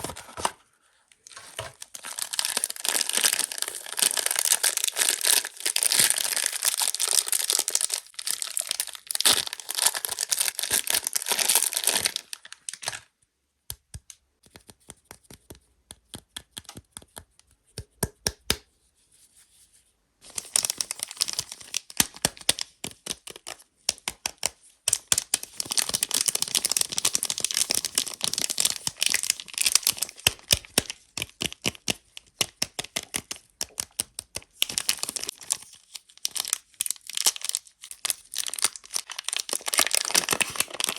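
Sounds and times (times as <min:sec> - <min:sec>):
wrappers crinkling and tearing: 0:01.3 - 0:13.1, 0:20.3 - 0:23.6, 0:24.9 - 0:32.5, 0:34.0 - 0:40.9.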